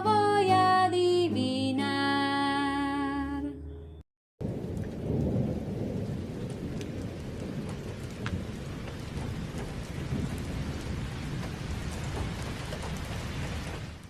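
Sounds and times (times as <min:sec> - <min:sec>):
heavy rain: 0:04.4 - 0:14.0
low rumble of thunder: 0:04.4 - 0:14.0
rain drop ticks: 0:04.4 - 0:14.0.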